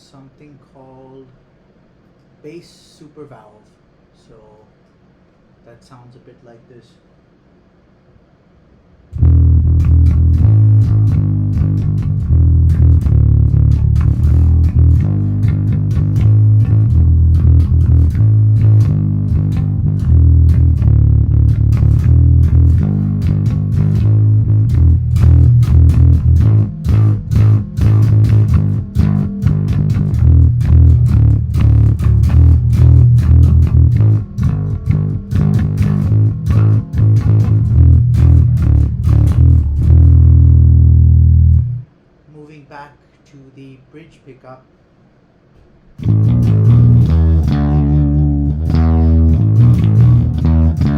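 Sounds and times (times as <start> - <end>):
electric bass playing low notes: 9.1 - 41.9, 46.0 - 50.9.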